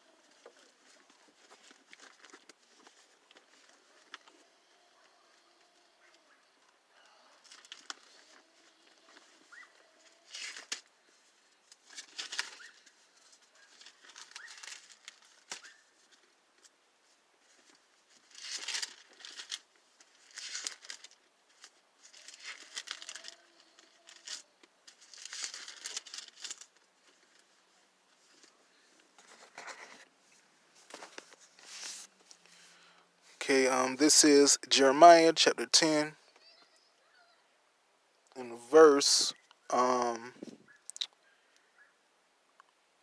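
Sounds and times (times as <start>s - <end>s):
thin pages rustling: 0.1s - 6.3s, 7.4s - 32.9s.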